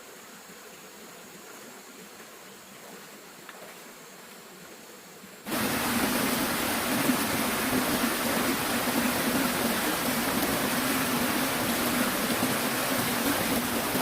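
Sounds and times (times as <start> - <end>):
faint hiss: 0.0 - 14.0
river water rushing: 5.5 - 14.0.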